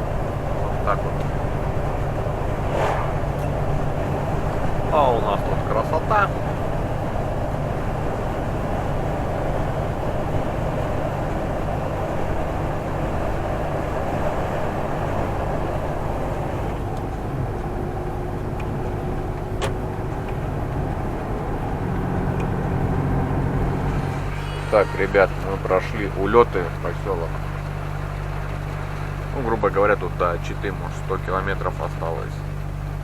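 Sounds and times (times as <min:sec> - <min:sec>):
road and tyre noise: 0:00.0 - 0:33.0
truck engine drone: 0:00.0 - 0:33.0.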